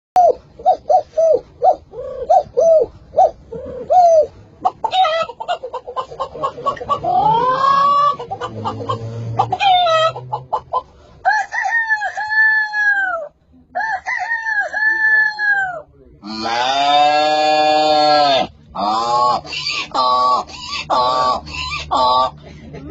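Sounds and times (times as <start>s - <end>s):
man imitating chicken clucks: 0.2s - 10.9s, 11.6s - 22.4s
man imitating rooster crow: 11.3s - 22.3s.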